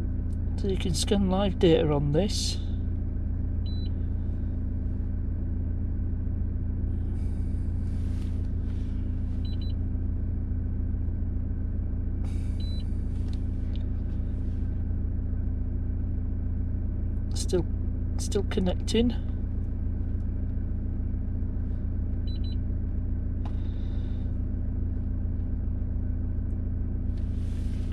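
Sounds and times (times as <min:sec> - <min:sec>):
car engine idling: 0:00.0 - 0:27.9
faint high beeps: 0:12.6 - 0:12.9.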